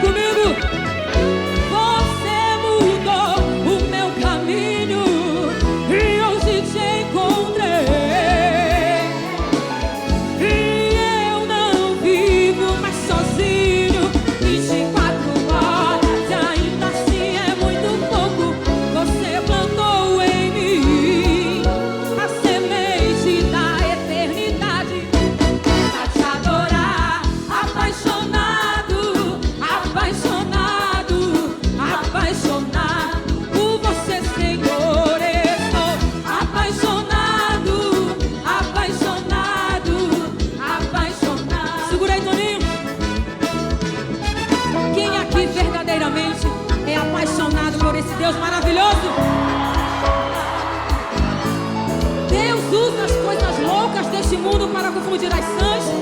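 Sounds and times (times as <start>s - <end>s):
live band music with steady beat: 0.0s - 56.0s.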